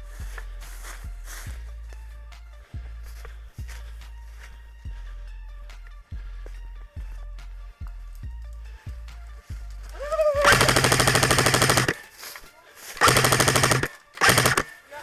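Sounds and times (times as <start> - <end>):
music with steady beat: 0.0 - 14.5
airsoft gun full-auto fire: 10.4 - 12.0, 13.0 - 14.7.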